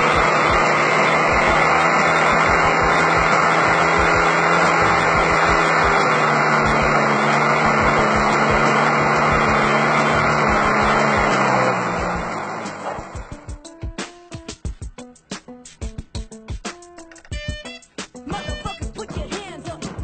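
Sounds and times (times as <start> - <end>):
model airplane engine running: 0.0 - 13.5.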